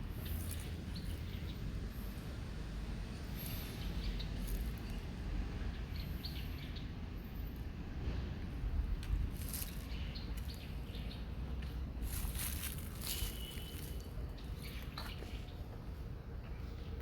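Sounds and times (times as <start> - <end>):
wind rumble on microphone: 6.8 - 13.9.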